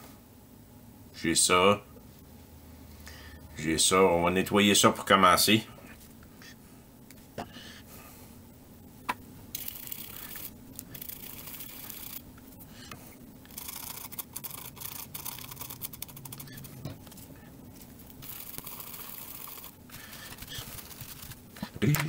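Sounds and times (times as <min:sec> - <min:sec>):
scratchy scrubbing on circuit board: 0:09.6 - 0:12.2, 0:13.5 - 0:17.2, 0:18.2 - 0:21.5.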